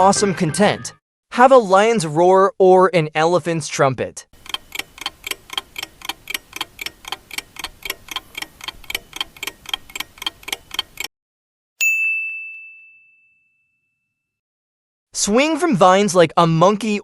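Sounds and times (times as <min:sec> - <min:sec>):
clock ticking: 0:04.4 - 0:11.1
bright ding: 0:11.8 - 0:14.1.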